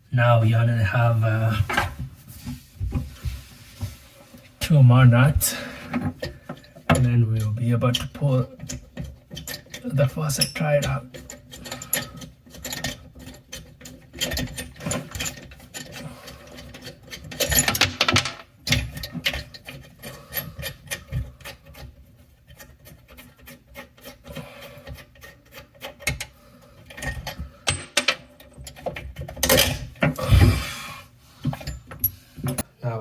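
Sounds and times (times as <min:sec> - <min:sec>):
hand tools scraping and clicking: 0:05.8 - 0:30.5
tools rattling: 0:06.1 - 0:30.6.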